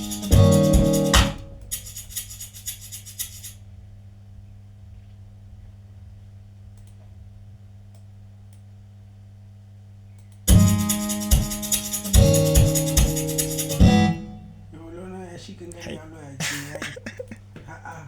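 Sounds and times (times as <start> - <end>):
piano chords: 0.0 - 1.6, 12.2 - 14.8
steady low hum: 0.0 - 18.0.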